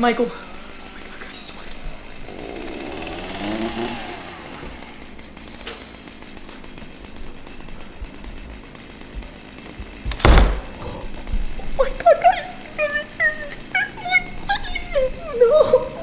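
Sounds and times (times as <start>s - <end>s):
chainsaw engine running: 0.0s - 16.0s
loud thump: 10.1s - 11.0s.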